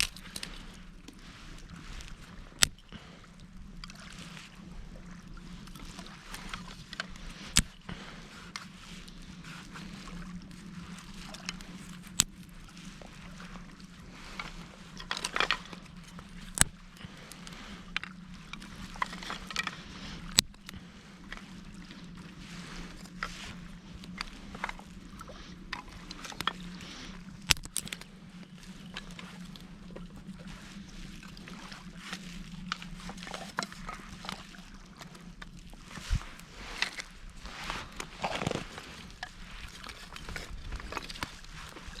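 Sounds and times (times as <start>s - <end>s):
twigs crackling and snapping: 0.0s - 0.8s, 2.0s - 2.9s, 5.9s - 8.0s, 11.0s - 12.6s, 14.3s - 20.8s, 26.0s - 28.1s, 35.1s - 41.9s
twigs crackling in fire: 2.5s - 2.8s, 11.0s - 12.4s, 16.4s - 17.4s, 19.0s - 20.7s, 27.4s - 28.1s.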